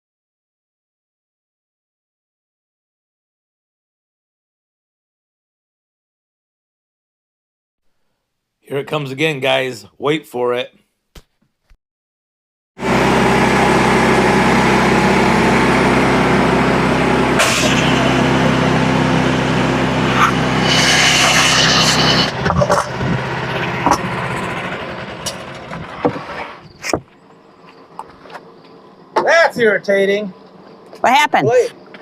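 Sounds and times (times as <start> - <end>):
sawmill engine running: 12.8 - 32.0
metal clanks and knocks: 22.3 - 27.1.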